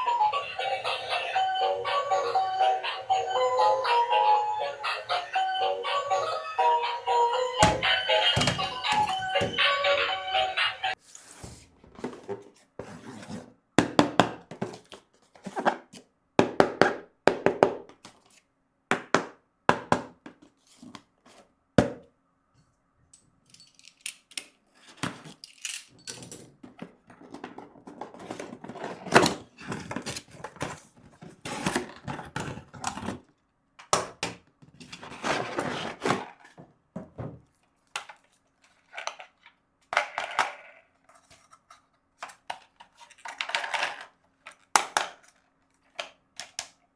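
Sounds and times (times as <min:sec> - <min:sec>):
toy and packaging handling: 0:07.6 - 0:13.5, 0:14.4 - 0:16.1, 0:17.9 - 0:18.5, 0:23.5 - 0:36.7, 0:37.4 - 0:46.9.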